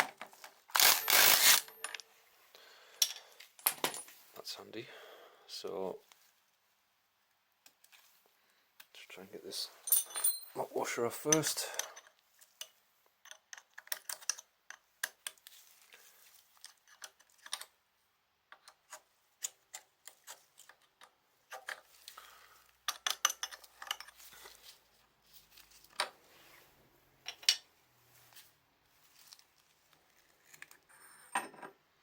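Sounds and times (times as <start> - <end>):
hand tools clinking on metal parts: 0.8 - 2.1, 9.8 - 12.1.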